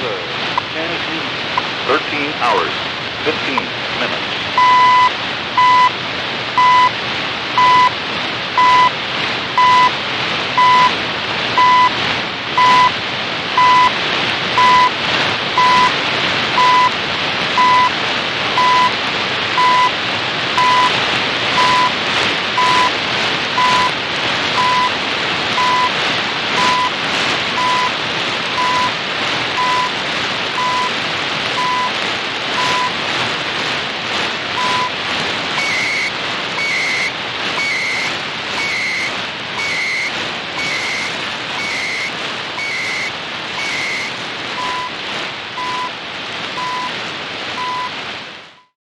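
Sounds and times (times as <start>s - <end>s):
spoken time announcement: 0.0s - 4.3s
radio static hiss with crackles: 0.0s - 48.7s
short radio beeps: 4.6s - 5.9s, 6.6s - 6.9s, 7.6s - 7.9s, 8.6s - 8.9s, 9.6s - 9.9s, 10.6s - 10.9s, 11.6s - 11.9s, 12.6s - 12.9s, 13.6s - 13.9s, 14.6s - 14.9s, 15.6s - 15.9s, 16.6s - 16.9s, 17.6s - 17.9s, 18.6s - 18.9s, 19.6s - 19.9s, 20.6s - 20.9s, 21.6s - 21.9s, 22.6s - 22.9s, 23.6s - 23.9s, 24.6s - 24.9s, 25.6s - 25.9s, 26.6s - 26.9s, 27.6s - 27.9s, 30.6s - 30.9s, 32.6s - 32.9s, 34.6s - 34.9s, 35.6s - 45.0s, 45.6s - 46.0s, 46.6s - 47.0s.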